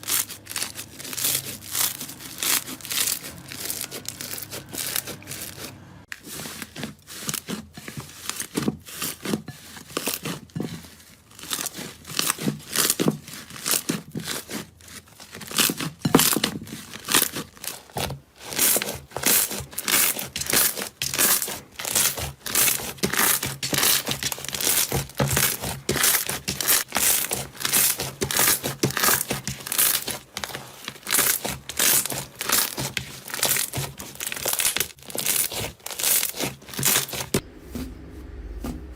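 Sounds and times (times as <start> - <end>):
slime squishing by hand: 0.0 - 38.9.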